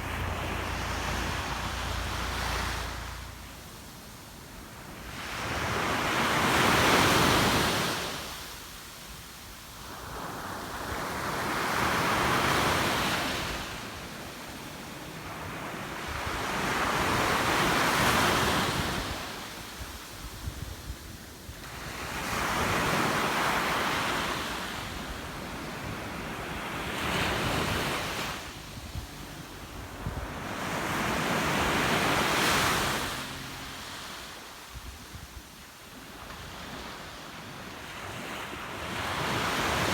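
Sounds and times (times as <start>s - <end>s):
sea waves breaking: 0.0s - 8.3s.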